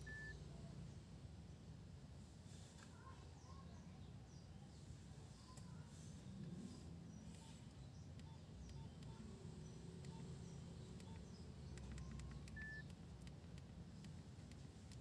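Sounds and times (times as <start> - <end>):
low background hum: 0.0 - 15.0
phone keys clicking: 10.0 - 15.0.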